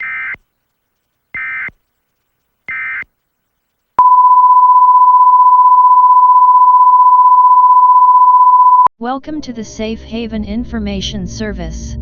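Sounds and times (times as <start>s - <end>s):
electronic data bursts: 0.0s - 0.4s, 1.4s - 1.7s, 2.7s - 3.1s
loud steady tone: 4.0s - 8.9s.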